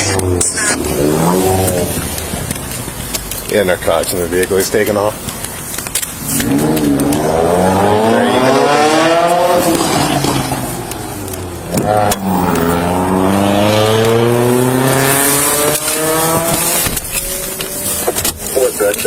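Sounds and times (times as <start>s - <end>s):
car accelerating with loud exhaust: 0.0s - 19.0s.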